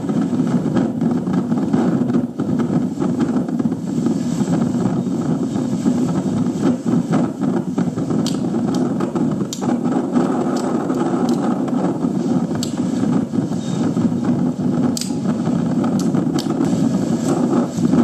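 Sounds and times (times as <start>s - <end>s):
strong wind gusting: 0.0s - 18.0s
sharp clicks: 14.9s - 15.2s.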